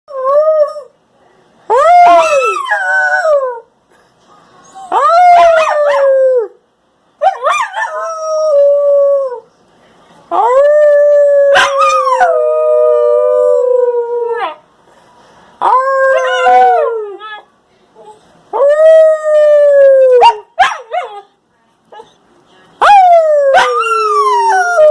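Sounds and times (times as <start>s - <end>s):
puppy howling: 22.8s - 24.9s.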